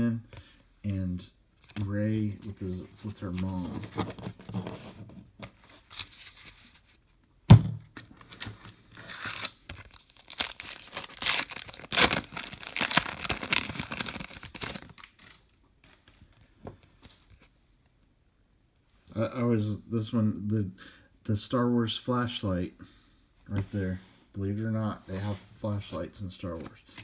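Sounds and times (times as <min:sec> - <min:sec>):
sharp thunk: 0:07.5 - 0:07.8
wrapper tearing and crinkling: 0:08.2 - 0:15.6.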